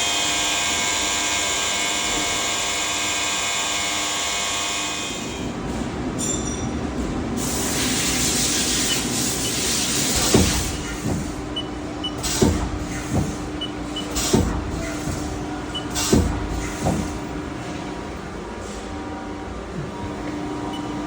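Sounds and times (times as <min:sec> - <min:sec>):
hiss: 0:07.4 - 0:11.3
lathe humming: 0:08.0 - 0:21.0
sharp knocks: 0:10.0 - 0:17.6.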